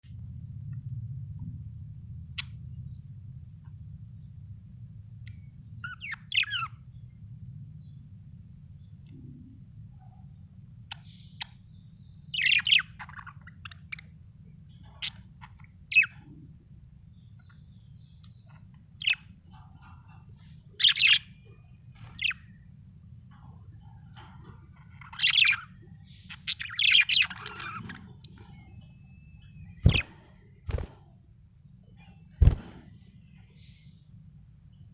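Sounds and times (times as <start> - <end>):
steady low hum: 0.0 - 34.9
budgerigar chirping: 5.3 - 6.8, 10.9 - 14.1, 14.9 - 16.2, 17.1 - 20.2, 20.8 - 22.5, 24.9 - 30.2.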